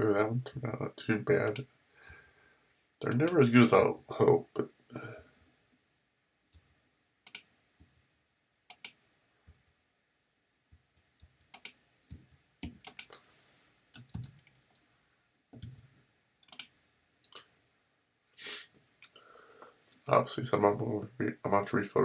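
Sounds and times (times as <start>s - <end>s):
computer mouse and keyboard clicks: 1.4s - 1.7s, 3.1s - 3.4s, 7.3s - 8.0s, 8.7s - 9.6s, 10.7s - 13.2s, 14.0s - 14.8s, 15.6s - 15.8s, 16.4s - 17.4s.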